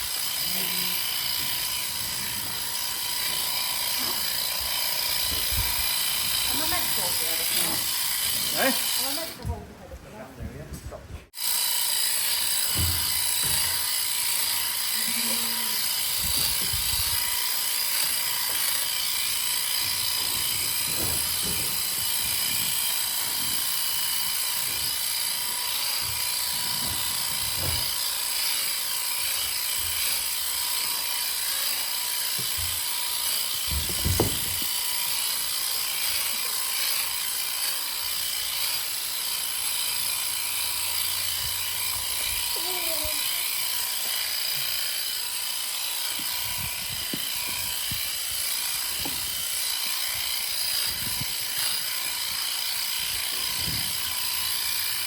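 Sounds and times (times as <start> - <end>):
electric shears whirring: 0.0 - 9.6, 11.3 - 55.0
dull knocks: 33.7 - 34.6.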